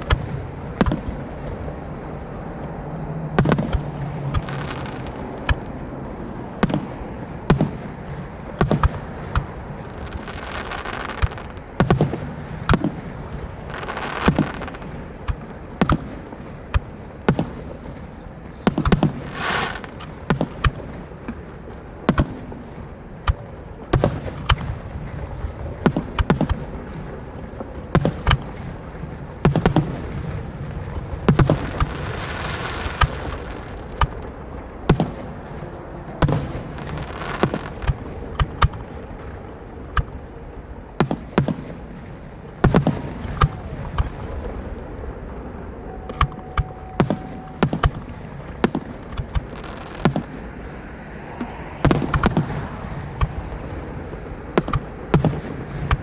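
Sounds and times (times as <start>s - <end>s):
fireworks crackling: 0.0s - 56.0s
fireworks shells bursting: 45.9s - 56.0s.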